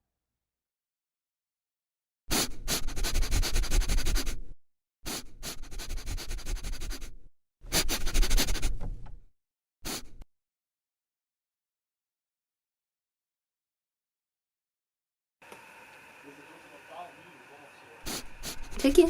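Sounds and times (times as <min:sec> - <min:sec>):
dog snuffling and rubbing: 0:07.7 - 0:08.8, 0:18.1 - 0:19.0.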